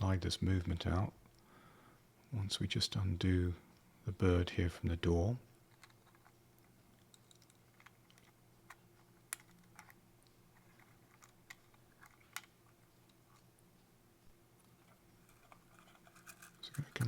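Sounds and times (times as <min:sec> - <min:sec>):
faint steady hum: 0:00.0 - 0:17.0
small clicks and taps of parts: 0:05.7 - 0:13.9.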